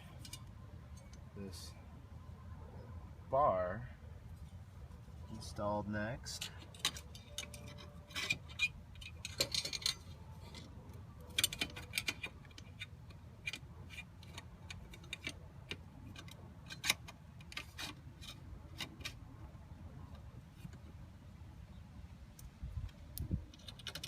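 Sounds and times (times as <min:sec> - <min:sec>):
plastic parts clicking and rattling: 0:06.4 - 0:19.2, 0:22.9 - 0:24.0.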